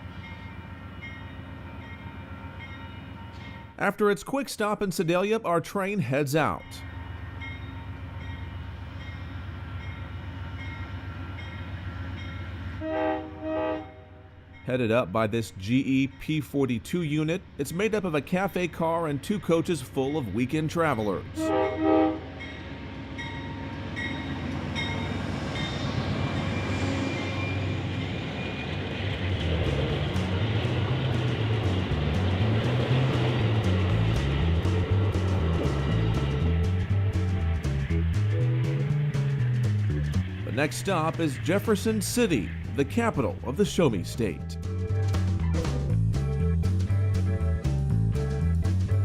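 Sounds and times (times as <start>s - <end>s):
train rumbling: 0.0s - 4.0s, 6.4s - 49.0s
locomotive horn blowing: 12.8s - 14.3s, 21.4s - 22.5s.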